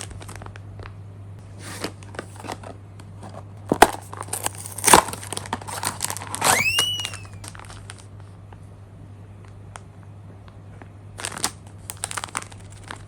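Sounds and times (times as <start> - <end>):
packaging crunches: 0.0 - 0.9, 1.8 - 8.1, 11.2 - 13.0
packaging crinkling and rustling: 0.0 - 1.0, 1.6 - 8.3, 10.8 - 13.0
brief high squeak: 6.4 - 7.5.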